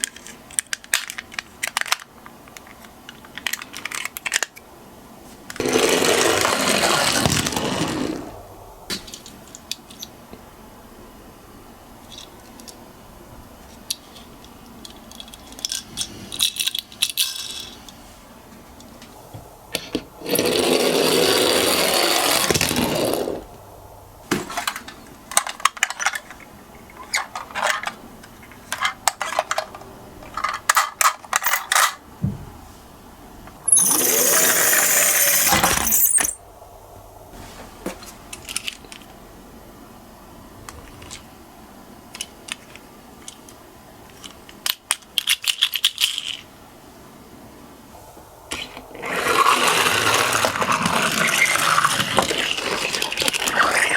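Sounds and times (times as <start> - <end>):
toy cars clattering and clicking: 0.0 - 4.6, 5.5 - 8.3, 12.0 - 12.8, 13.7 - 18.0, 24.3 - 32.0, 33.7 - 36.4, 38.3 - 39.1, 42.1 - 46.5, 48.5 - 53.9.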